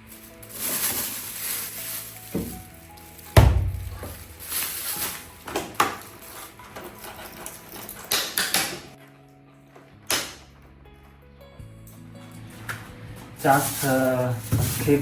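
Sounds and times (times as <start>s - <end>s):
kitchen items knocking and clattering: 0.0s - 9.0s, 12.6s - 15.0s
heavy thump: 3.4s - 4.2s.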